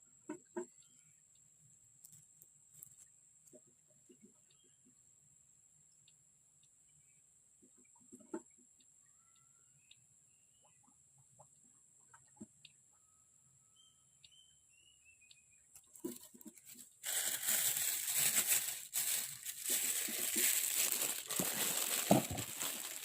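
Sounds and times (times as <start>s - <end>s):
loud rustling and crinkling: 16.0s - 23.0s.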